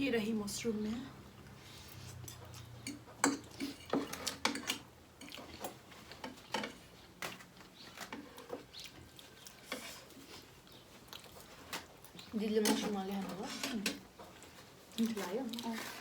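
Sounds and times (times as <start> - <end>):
utensils tapping on plates: 2.3 - 5.3.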